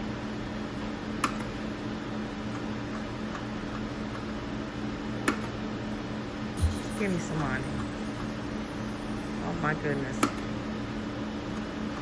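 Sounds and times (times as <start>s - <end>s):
machine hum with low tones: 6.6s - 12.0s.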